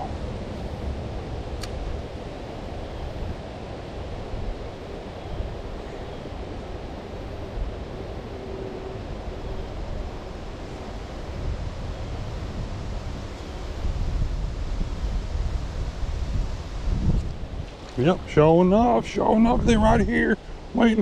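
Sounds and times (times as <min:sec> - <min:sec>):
wind buffeting microphone: 0:00.0 - 0:21.0
creek water rushing: 0:09.0 - 0:21.0.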